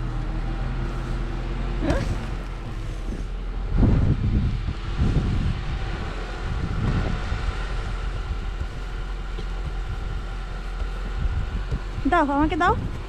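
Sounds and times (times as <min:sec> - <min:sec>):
car engine idling: 0:00.0 - 0:13.0
brushing snow off car: 0:00.6 - 0:03.6, 0:05.8 - 0:13.0
wind on microphone: 0:01.8 - 0:13.0.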